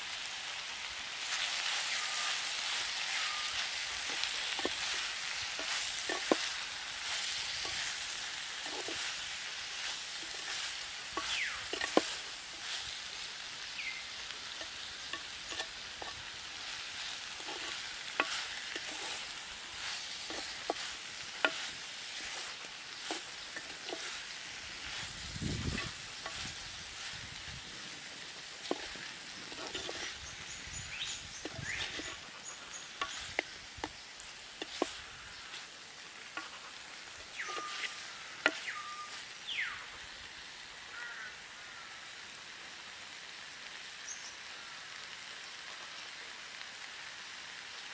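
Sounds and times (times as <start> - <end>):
food sizzling in a pan: 0.0 - 47.9
spoon scraping a pan: 1.2 - 39.3.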